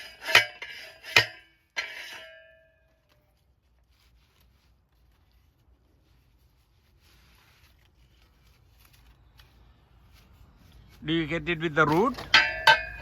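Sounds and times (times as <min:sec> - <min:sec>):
metallic clanks of steel tool: 0:00.0 - 0:02.7, 0:11.9 - 0:13.0.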